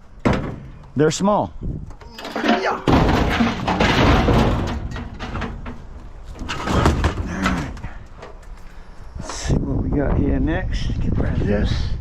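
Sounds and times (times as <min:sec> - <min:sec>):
metal scrap scraping and clattering: 0:02.1 - 0:07.9
scattered knocks: 0:02.3 - 0:07.8.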